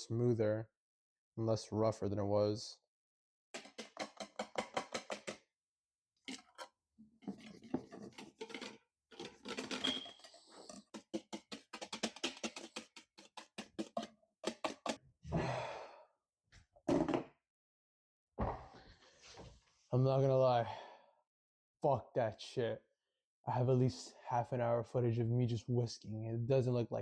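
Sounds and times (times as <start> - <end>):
whisk clicking against bowl: 3.6 - 5.4, 10.7 - 15.0.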